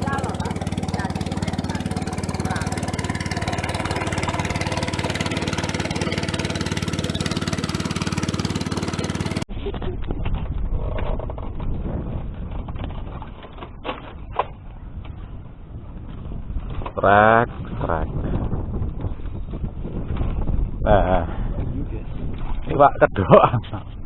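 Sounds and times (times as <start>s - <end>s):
motor running: 0.0s - 9.5s
low rumbling noise: 0.0s - 24.0s.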